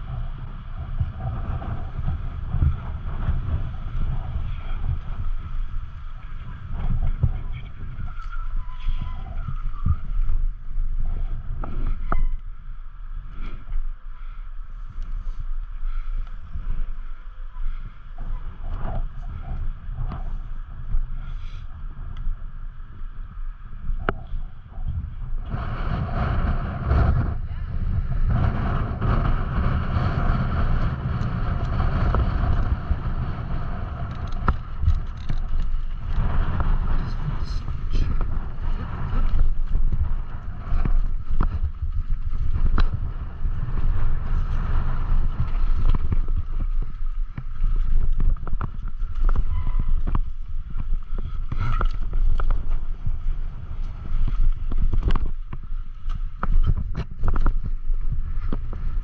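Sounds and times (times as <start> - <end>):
low rumble: 0.0 - 59.0
wind buffeting microphone: 0.0 - 59.0
bike clattering over rough ground: 22.9 - 59.0.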